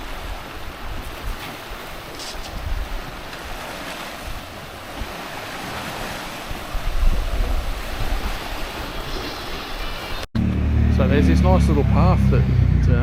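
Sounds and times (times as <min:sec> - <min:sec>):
sea waves washing on beach: 0:00.0 - 0:10.3
wind buffeting microphone: 0:00.0 - 0:10.3.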